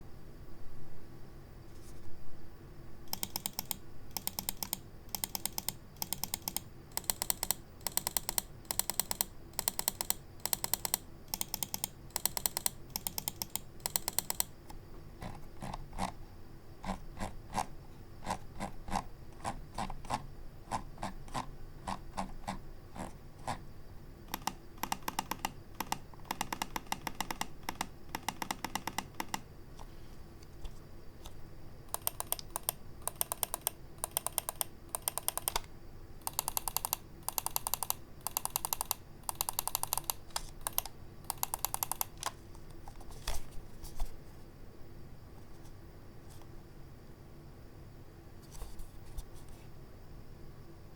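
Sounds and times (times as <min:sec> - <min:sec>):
mouse buttons clicking: 0:03.1 - 0:14.5, 0:24.3 - 0:29.9, 0:31.2 - 0:42.4.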